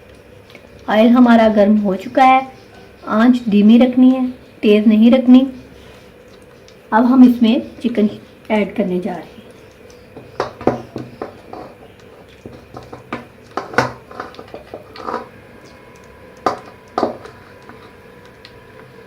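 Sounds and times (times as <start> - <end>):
dishes and utensils clinking: 10.1 - 15.8, 16.4 - 18.0.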